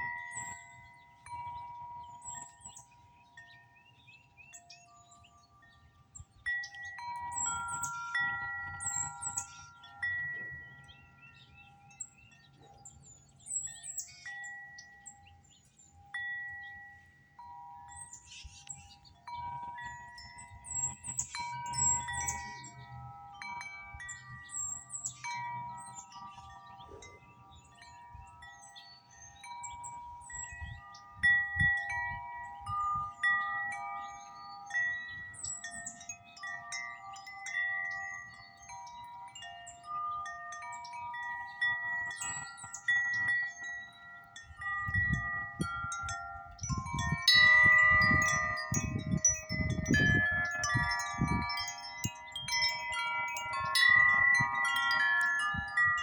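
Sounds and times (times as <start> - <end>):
wind chime jangling: 0.0 - 56.0
wind rumbling on microphone: 17.9 - 36.0, 44.3 - 56.0.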